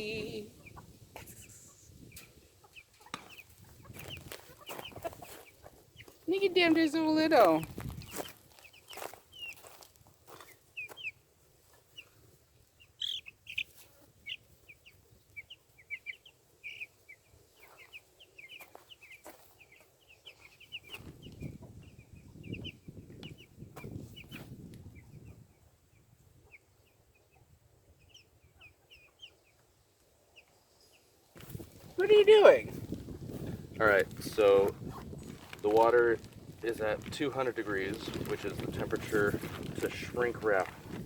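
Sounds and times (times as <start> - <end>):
chickens clucking: 0.0 - 30.7.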